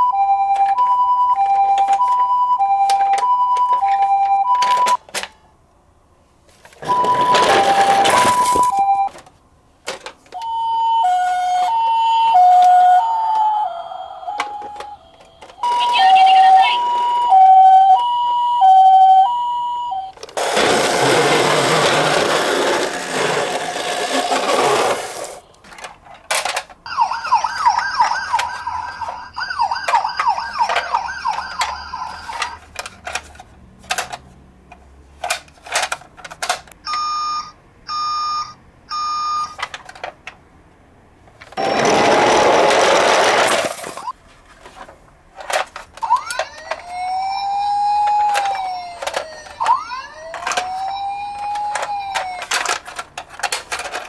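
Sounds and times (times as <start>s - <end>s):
two-tone hi-lo siren: 10.4s - 20.2s, 26.9s - 32.6s, 46.2s - 52.5s
rising and falling siren wail: 10.5s - 20.1s, 26.9s - 32.6s, 46.1s - 52.5s
rapid yelping siren: 10.6s - 20.1s, 26.9s - 32.6s, 46.1s - 52.5s
electronic beeps: 15.6s - 17.4s.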